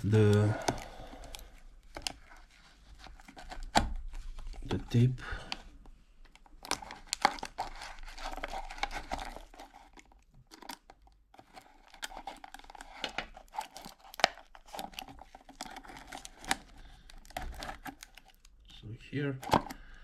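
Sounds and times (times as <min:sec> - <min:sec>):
packaging tearing and crinkling: 0:06.4 - 0:18.5.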